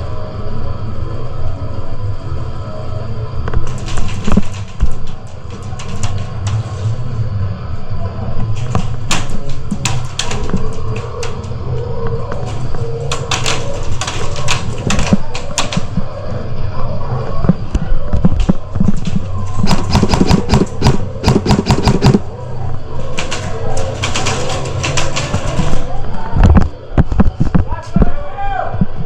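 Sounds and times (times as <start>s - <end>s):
airsoft guns firing: 19.6s - 22.3s.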